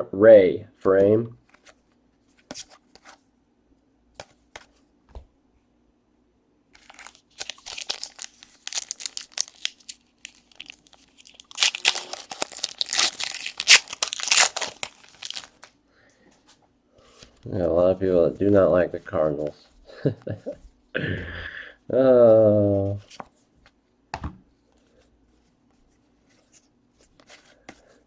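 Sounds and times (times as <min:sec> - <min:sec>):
foil wrappers crinkling: 0:06.8 - 0:15.8.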